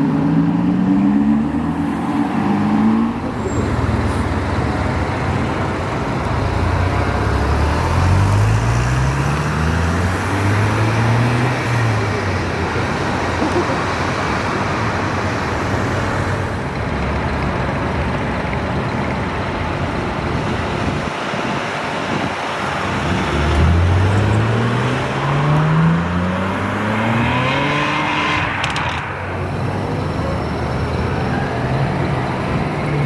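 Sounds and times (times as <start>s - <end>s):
road traffic noise: 0.0s - 33.0s
sports car engine accelerating: 22.9s - 32.1s.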